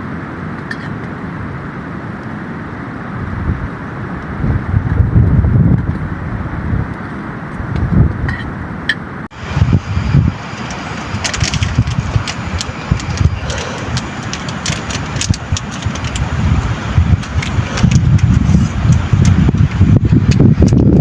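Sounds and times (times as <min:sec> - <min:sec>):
wind rumbling on microphone: 0:00.0 - 0:21.0
rain hissing: 0:09.3 - 0:21.0
sharp ticks: 0:10.6 - 0:21.0.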